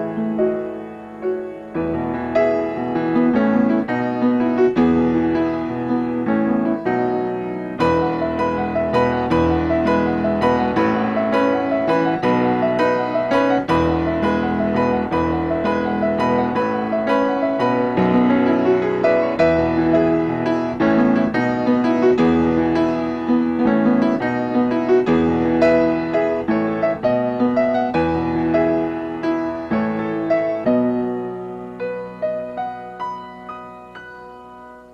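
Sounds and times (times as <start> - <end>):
solo piano playing: 0.0 - 34.9.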